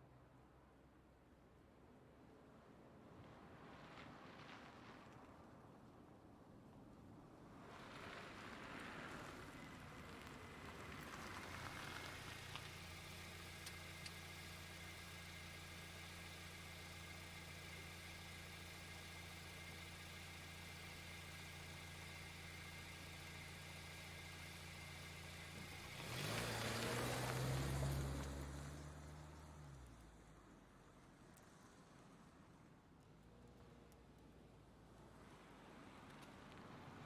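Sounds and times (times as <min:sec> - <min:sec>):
car revving and pulling away: 0:08.6 - 0:30.0
car engine idling: 0:10.8 - 0:26.4.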